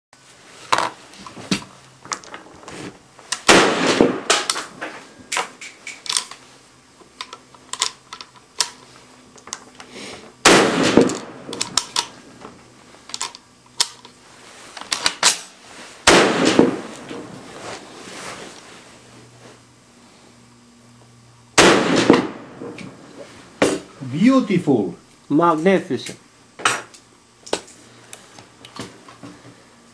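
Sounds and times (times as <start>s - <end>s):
rifle shots echoing: 3.4s - 4.5s, 10.4s - 11.8s, 16.1s - 17.0s, 21.6s - 22.7s.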